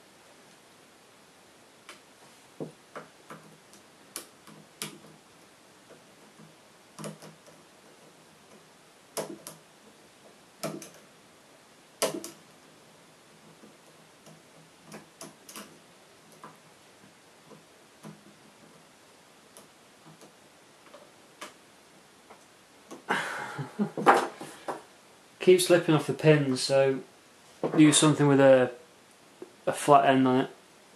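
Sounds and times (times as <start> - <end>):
lock pick clicking on pins: 5.9 - 8.6, 10.6 - 11.1, 13.5 - 16.6.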